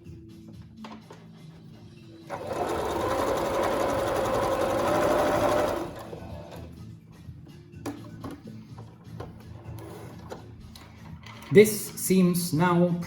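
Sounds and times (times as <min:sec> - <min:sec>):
sewing machine running: 0:02.3 - 0:06.6.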